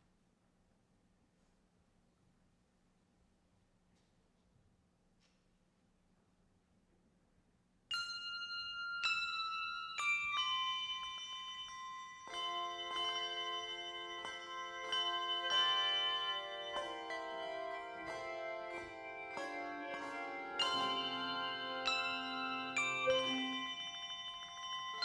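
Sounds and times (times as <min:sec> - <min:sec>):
bell-toned music: 0:07.9 - 0:25.0.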